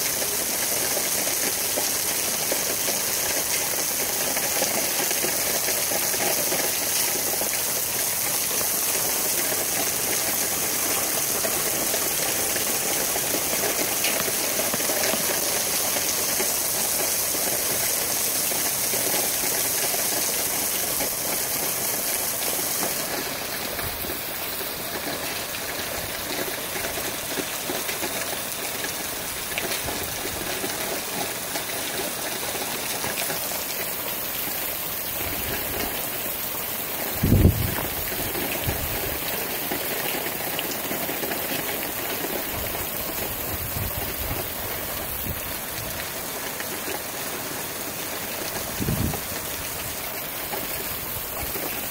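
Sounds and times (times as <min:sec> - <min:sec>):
heavy rain: 0:00.0 - 0:51.9
strong wind: 0:37.1 - 0:39.2, 0:43.4 - 0:46.0, 0:48.7 - 0:49.4.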